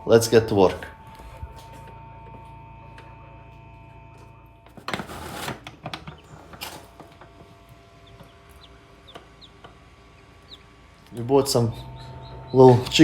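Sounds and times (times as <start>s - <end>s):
objects rustling and clattering: 4.7s - 8.3s
bird chirps: 11.6s - 13.0s.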